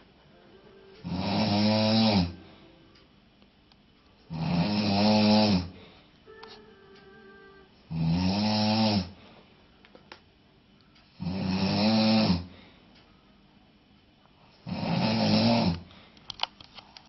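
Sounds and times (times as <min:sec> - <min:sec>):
man snoring loudly: 0:01.0 - 0:02.5, 0:04.3 - 0:05.8, 0:07.9 - 0:09.2, 0:11.2 - 0:12.6, 0:14.6 - 0:15.9.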